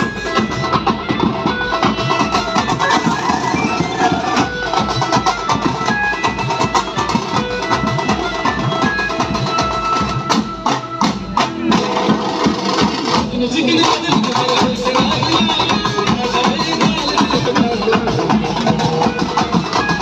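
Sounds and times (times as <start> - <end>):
banjo melody: 0.0 - 20.0
fast dense drumming: 11.6 - 20.0.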